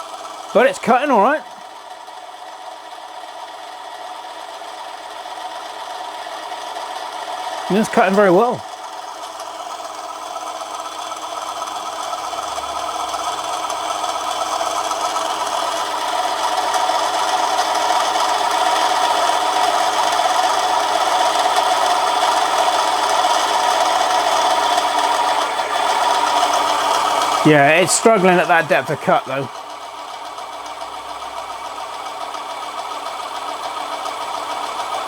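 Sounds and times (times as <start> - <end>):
lathe motor humming and whining: 0.0 - 28.4, 29.5 - 35.0.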